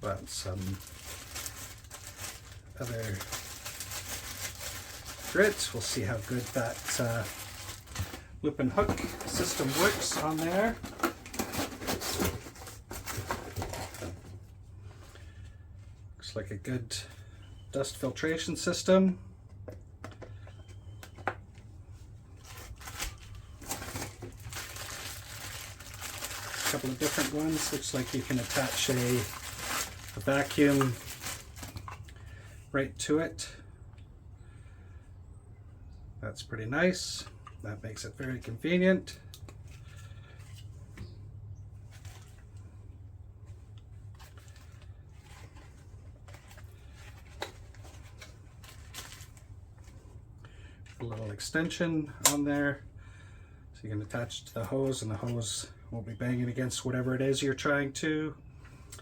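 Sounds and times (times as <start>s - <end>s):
packaging rustling: 0.0s - 14.4s, 22.3s - 32.2s, 43.5s - 50.1s
plastic parts knocked and shuffled: 0.0s - 14.5s, 22.4s - 32.2s, 43.4s - 50.1s.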